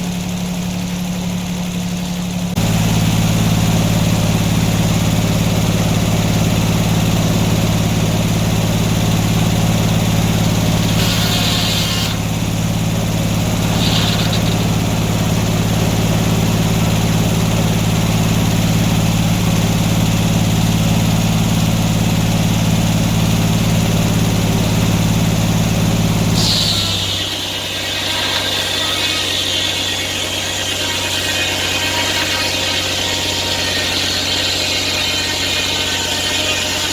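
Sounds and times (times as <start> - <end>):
sawmill engine running: 0.0 - 36.9
hissing bursts: 10.8 - 12.3, 13.5 - 15.1, 26.3 - 36.9.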